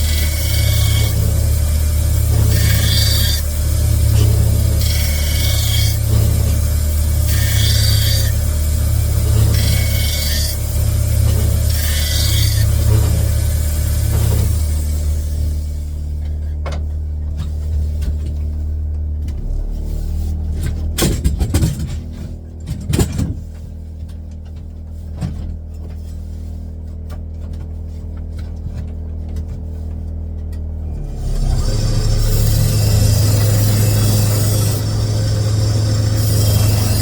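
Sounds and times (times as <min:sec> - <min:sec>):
machine motor humming: 0:00.0 - 0:21.0, 0:30.9 - 0:37.0.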